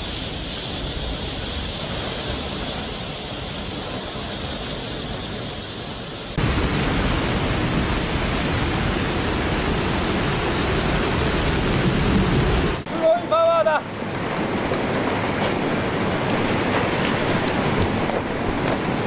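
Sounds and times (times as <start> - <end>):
wind: 0.0 - 19.0
heavy rain: 6.4 - 15.2.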